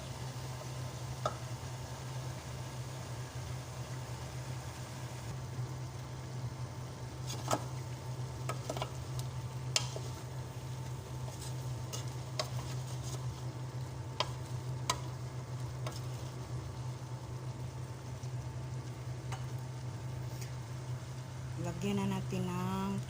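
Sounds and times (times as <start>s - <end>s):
faint sizzle: 0.0s - 23.0s
spoon knocking pan: 14.2s - 15.2s.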